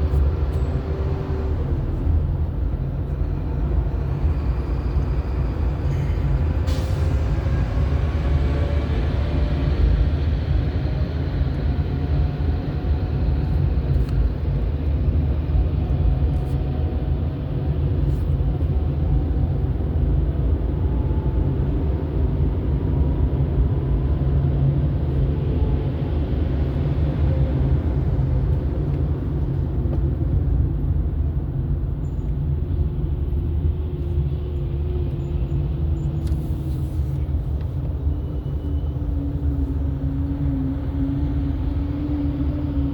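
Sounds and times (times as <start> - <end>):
car engine rumble: 0.0 - 42.9
road noise: 0.0 - 42.9.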